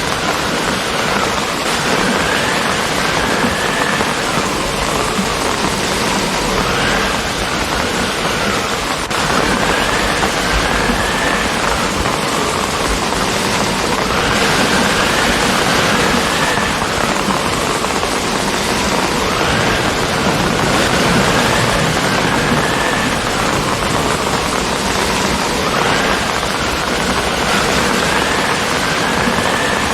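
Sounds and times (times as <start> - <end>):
heavy rain spattering: 0.0 - 29.9.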